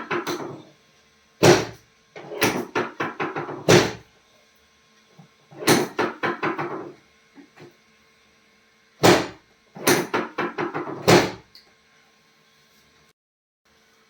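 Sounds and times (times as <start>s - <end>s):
sharp knocks and thuds: 1.4s - 1.8s, 2.4s - 4.0s, 9.0s - 11.4s.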